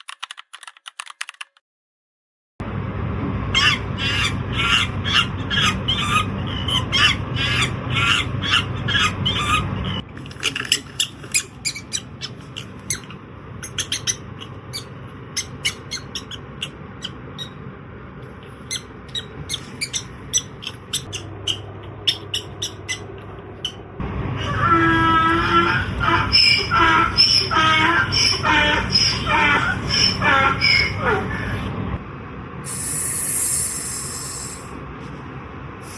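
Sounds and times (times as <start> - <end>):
bird squawking: 3.5 - 17.6, 18.5 - 31.8
bird chirps and clicks: 18.7 - 23.8.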